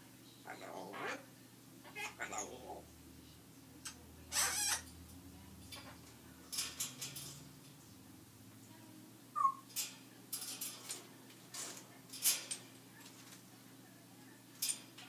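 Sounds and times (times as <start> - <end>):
parrot squawking and chirping: 0.4 - 2.8, 4.3 - 5.0, 9.4 - 9.7
parrot whistle: 9.4 - 9.6.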